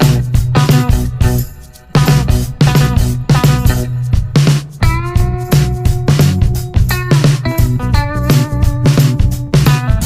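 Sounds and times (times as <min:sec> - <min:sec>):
bass line: 0:00.0 - 0:10.0
held plucked notes: 0:00.0 - 0:10.0
drum hits: 0:02.0 - 0:10.0.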